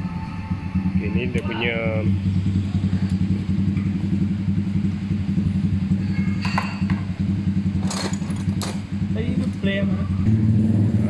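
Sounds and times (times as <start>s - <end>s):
small engine throbbing: 0.0s - 11.0s
metal parts clinking: 7.8s - 8.8s.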